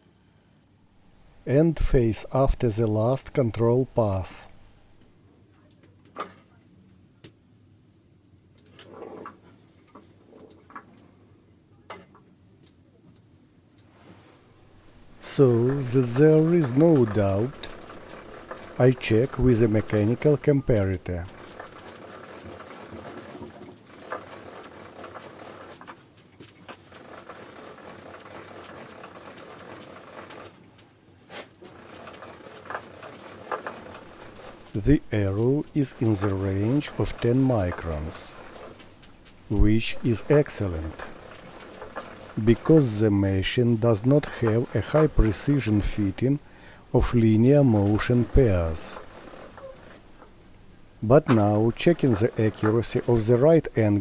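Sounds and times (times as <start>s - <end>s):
low steady hum: 1.0s - 5.0s, 14.7s - 21.8s, 33.9s - 54.0s.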